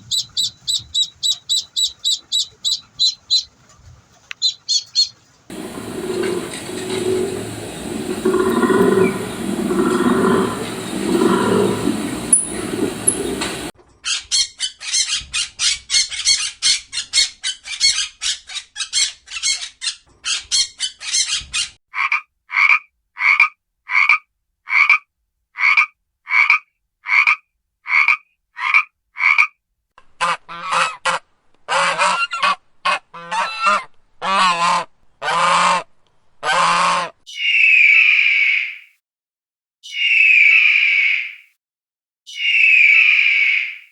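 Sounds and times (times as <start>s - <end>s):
rattling animal calls: 4.4s - 13.7s
harsh animal calls: 5.5s - 13.7s
low animal roar: 5.5s - 13.7s
short animal calls: 5.5s - 13.7s.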